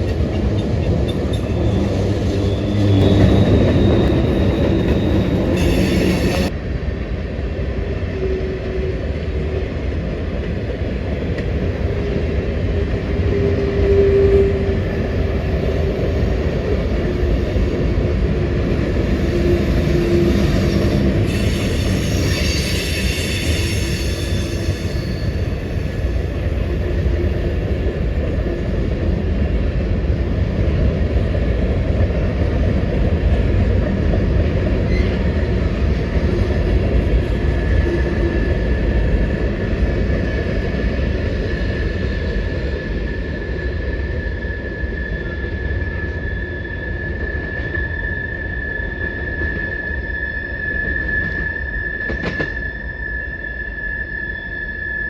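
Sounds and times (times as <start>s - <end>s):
train wheels rumbling on rail: 0.0s - 54.2s
high wheel squeal: 1.1s - 6.5s, 18.8s - 28.8s, 40.8s - 55.0s
thin steady squeal: 1.4s - 6.5s, 18.9s - 28.0s.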